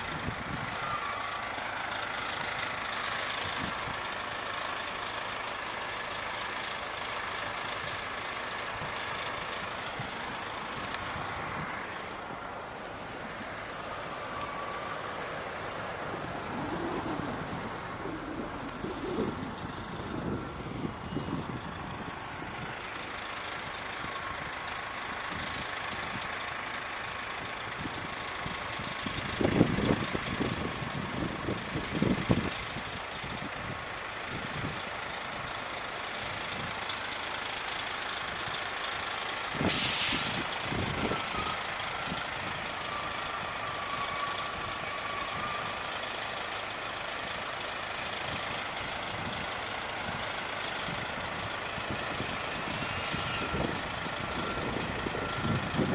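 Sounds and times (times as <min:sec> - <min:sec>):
bus engines running: 0:00.0 - 0:55.9
air brake hiss: 0:39.6 - 0:40.5.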